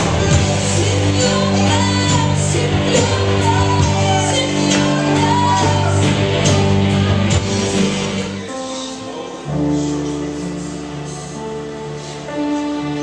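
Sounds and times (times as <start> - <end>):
person singing: 0.0 - 6.8
band playing worship music: 0.0 - 13.0.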